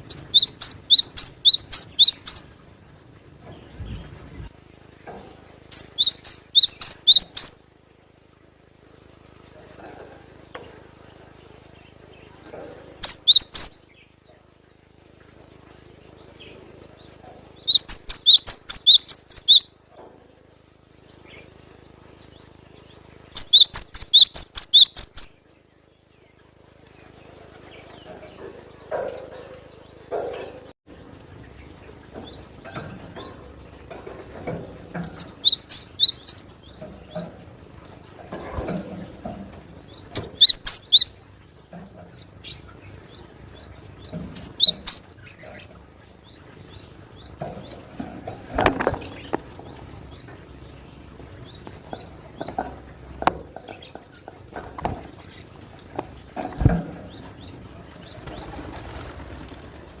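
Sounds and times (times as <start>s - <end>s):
bird chirping: 0.0s - 2.5s, 3.4s - 7.6s, 11.5s - 14.4s, 16.1s - 19.8s, 21.0s - 30.8s, 31.6s - 37.4s, 38.4s - 41.2s, 42.0s - 54.2s
bird rapid sharp notes: 0.0s - 2.5s, 5.7s - 7.6s, 13.0s - 13.7s.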